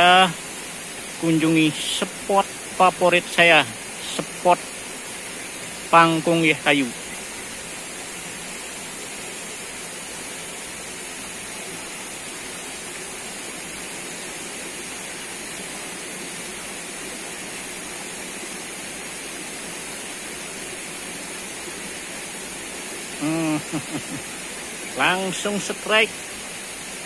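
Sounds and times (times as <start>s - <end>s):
flowing river water: 0.0s - 27.0s.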